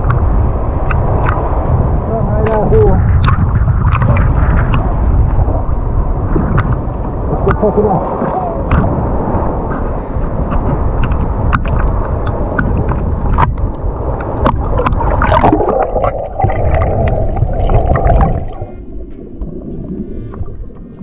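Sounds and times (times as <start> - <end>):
water sloshing and gurgling: 0.0 - 21.0
wind buffeting microphone: 0.0 - 21.0
sharp knocks and splashes: 2.4 - 5.5, 8.6 - 9.0, 9.7 - 21.0.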